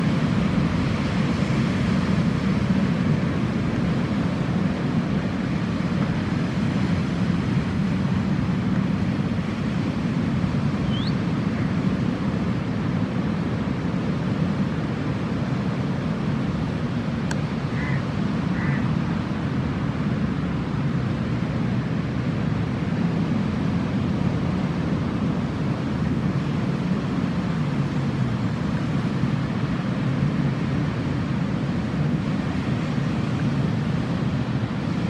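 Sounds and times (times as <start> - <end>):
jet ski engine running: 0.0 - 35.0
rushing water: 0.0 - 35.0.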